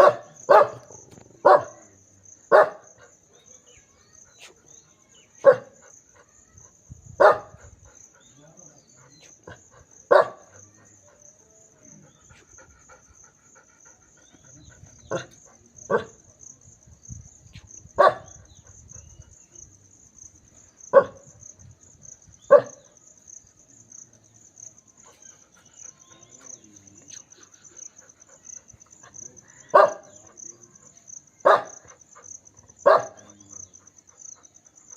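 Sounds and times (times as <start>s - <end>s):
dog barking: 0.0s - 3.2s, 5.4s - 6.5s, 7.2s - 7.8s, 9.1s - 12.1s, 15.1s - 16.3s, 18.0s - 19.0s, 20.9s - 21.3s, 22.5s - 22.9s, 27.7s - 34.9s
insects chirping: 0.0s - 34.9s.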